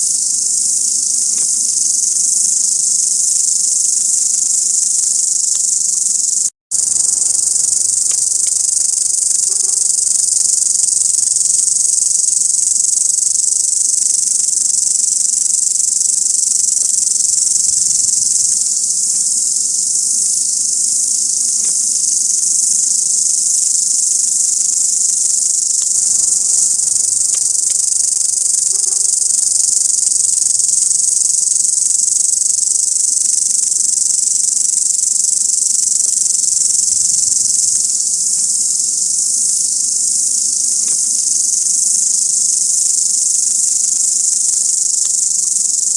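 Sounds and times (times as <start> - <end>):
grasshoppers buzzing: 0.0 - 45.9.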